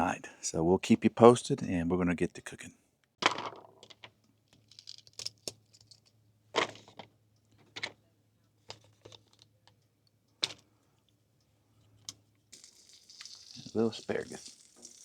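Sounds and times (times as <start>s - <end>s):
cooking gear clicks and knocks: 8.6s - 10.7s.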